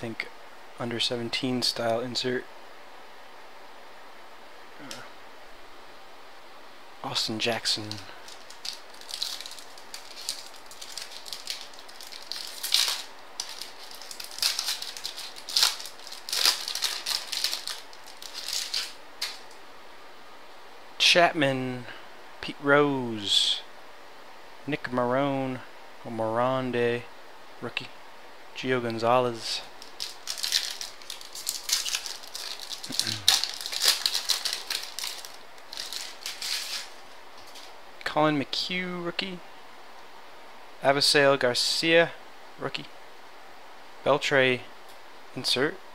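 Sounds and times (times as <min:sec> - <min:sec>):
cards rustling and snapping: 0:07.8 - 0:19.6, 0:29.8 - 0:37.7
trading cards flipped by hand: 0:29.8 - 0:37.7
voice murmuring: 0:32.9 - 0:33.4.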